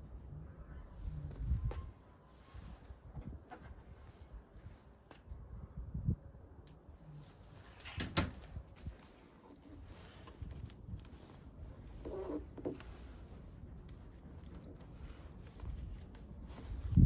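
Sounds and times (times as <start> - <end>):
small crackles: 6.6 - 17.0
tape rustling: 7.4 - 17.0.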